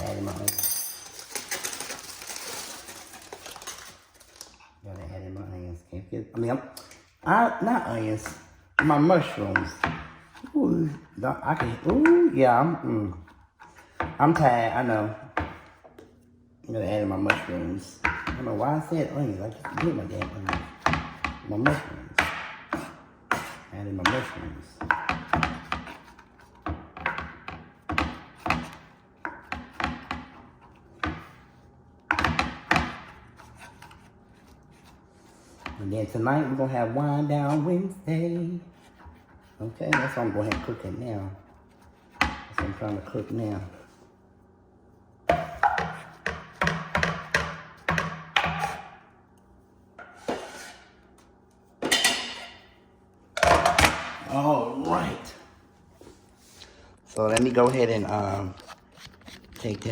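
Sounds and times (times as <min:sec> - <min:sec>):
utensils and cookware clattering: 0:00.0 - 0:04.8, 0:51.8 - 0:52.8
utensil knocking on cookware: 0:45.3 - 0:48.9.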